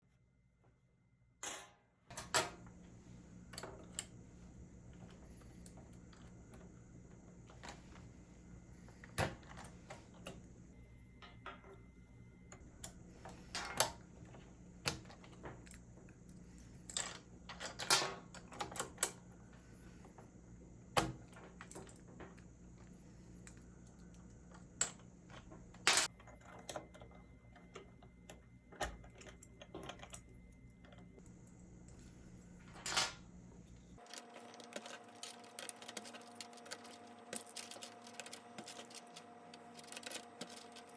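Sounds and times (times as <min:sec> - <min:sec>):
steady low hum: 0:02.1 - 0:40.9.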